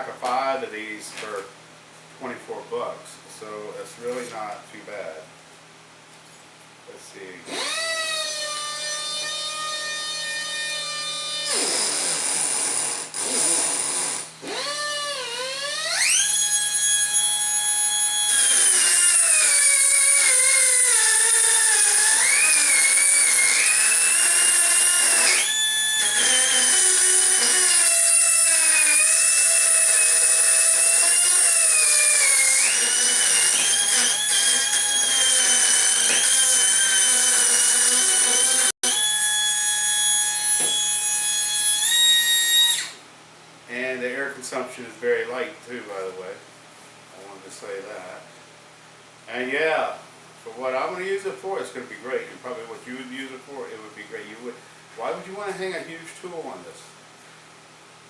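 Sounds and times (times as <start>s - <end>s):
die grinder whining: 7.5s - 43.0s
end mill cutting aluminum: 7.5s - 43.0s.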